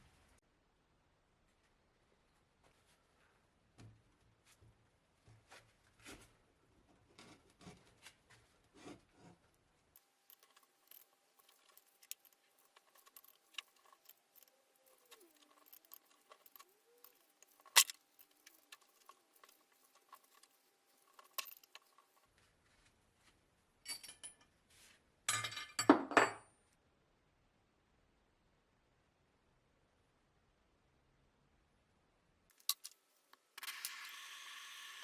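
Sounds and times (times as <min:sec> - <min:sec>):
small metal parts clinking: 0:10.0 - 0:22.3, 0:32.5 - 0:33.0.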